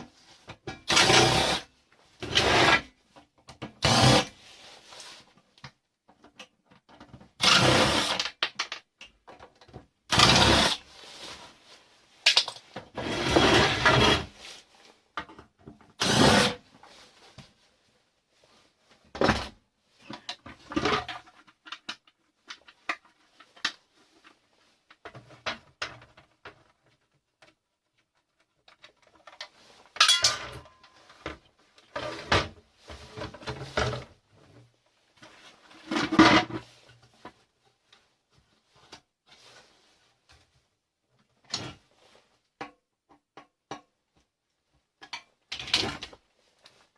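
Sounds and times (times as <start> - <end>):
small metal and plastic parts clattering: 6.1 - 10.5, 25.0 - 34.1.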